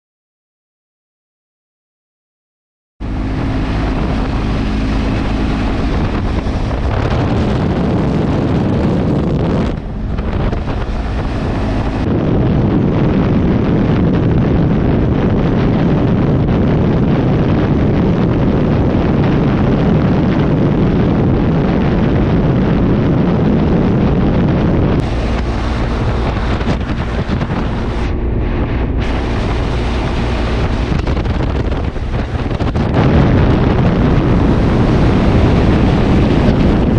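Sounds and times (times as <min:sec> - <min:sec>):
motorcycle engine running: 0:03.0 - 0:12.1, 0:25.0 - 0:36.9
wind buffeting microphone: 0:03.0 - 0:36.9.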